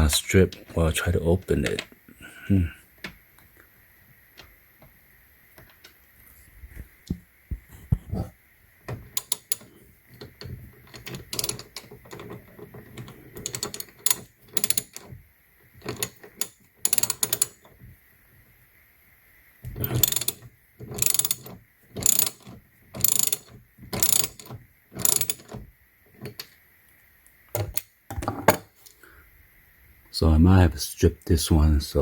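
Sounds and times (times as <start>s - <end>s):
ratchet wrench clicking: 13.4s - 15.0s, 15.8s - 17.6s, 19.8s - 25.6s.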